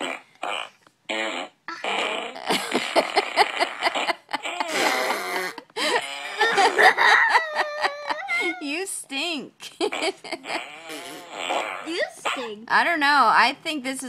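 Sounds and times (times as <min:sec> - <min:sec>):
fart sound effects: 0:00.0 - 0:06.9, 0:09.8 - 0:12.6.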